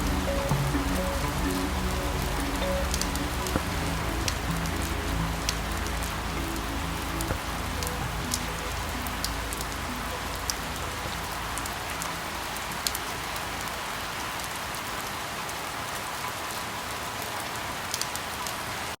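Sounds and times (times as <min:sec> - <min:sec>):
soft held music notes: 0:00.0 - 0:14.2
rain falling: 0:00.0 - 0:19.0.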